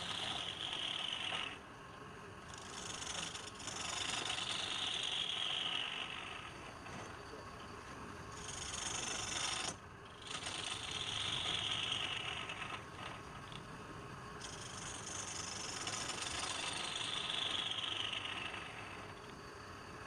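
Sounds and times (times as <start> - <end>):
turning tool cutting wood: 0.0 - 1.6, 2.5 - 6.6, 8.4 - 13.6, 14.4 - 19.2
wood lathe running: 2.6 - 6.6, 8.4 - 13.6, 14.4 - 19.2.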